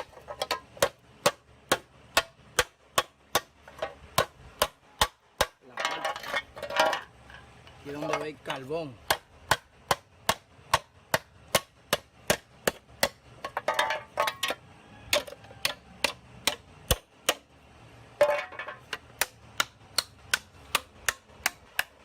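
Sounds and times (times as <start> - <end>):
metallic rattle: 5.8 - 8.4.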